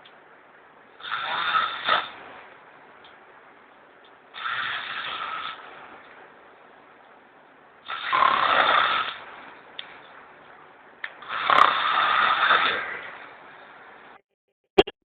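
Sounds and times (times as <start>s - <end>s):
person snoring loudly: 1.0s - 2.2s, 4.4s - 5.6s, 7.9s - 9.2s, 11.2s - 13.2s.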